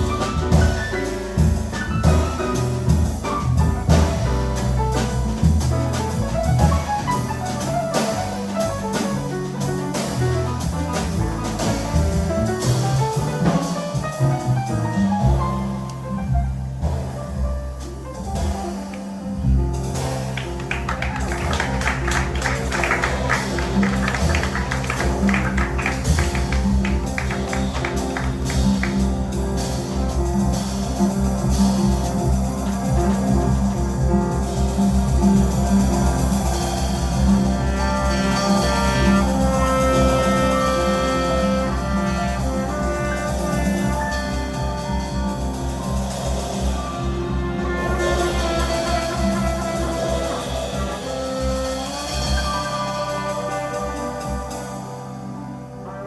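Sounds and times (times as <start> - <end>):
double bass: 0.0 - 56.0
drum kit and cymbals: 0.0 - 56.0
jazz quartet playing: 0.0 - 56.0
piano: 0.0 - 56.0
trumpet: 20.0 - 34.1, 35.3 - 46.0, 46.7 - 56.0.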